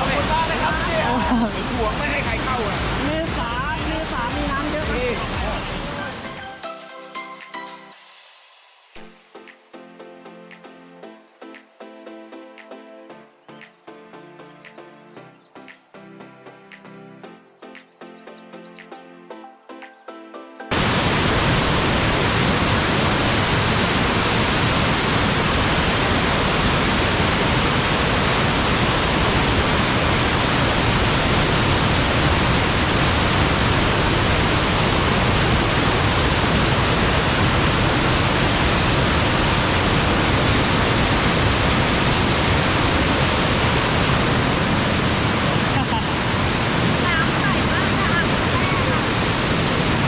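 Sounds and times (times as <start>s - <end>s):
waterfall roaring: 0.0s - 6.4s, 20.7s - 50.0s.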